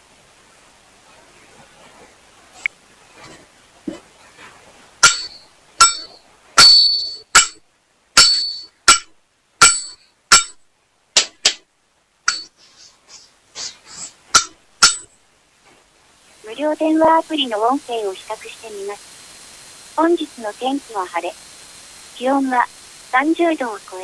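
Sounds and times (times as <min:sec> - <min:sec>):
hard object struck with clinks: 0:05.0 - 0:07.6, 0:08.2 - 0:10.6, 0:12.3 - 0:12.5.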